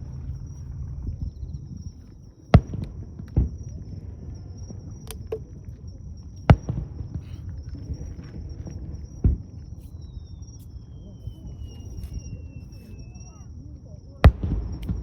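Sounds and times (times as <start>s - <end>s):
fireworks booming: 0.0s - 2.0s, 2.6s - 5.6s, 6.5s - 8.2s, 14.2s - 15.0s
fireworks cracking: 14.3s - 15.0s.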